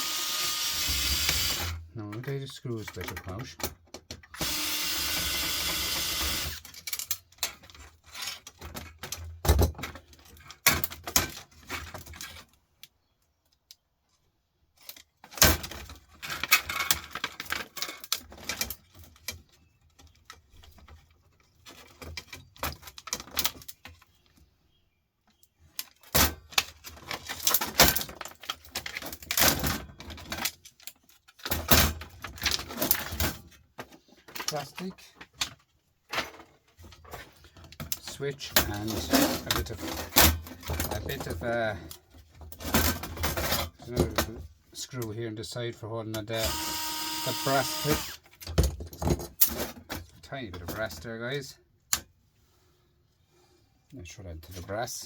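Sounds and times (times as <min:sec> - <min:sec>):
metal parts and tools clattering: 0:06.6 - 0:12.6, 0:14.8 - 0:24.0, 0:25.8 - 0:44.4.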